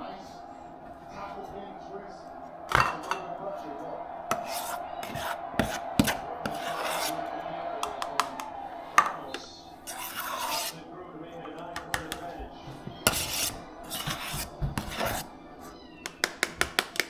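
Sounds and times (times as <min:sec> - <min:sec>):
spoon scraping bowl: 0:04.3 - 0:07.2, 0:09.0 - 0:10.8, 0:13.0 - 0:15.8
utensil knocking on bowl: 0:11.7 - 0:12.3.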